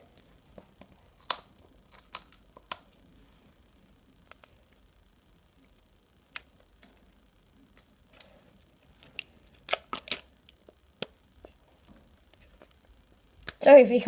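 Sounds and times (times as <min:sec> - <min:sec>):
plastic wrapping crackling: 0:06.3 - 0:13.7.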